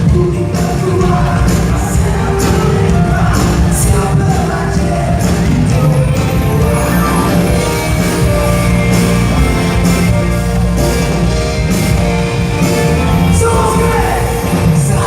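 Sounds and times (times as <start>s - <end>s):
person singing: 0.0s - 8.4s
cymbals keeping a beat: 0.0s - 15.0s
live rock band playing: 0.0s - 15.0s.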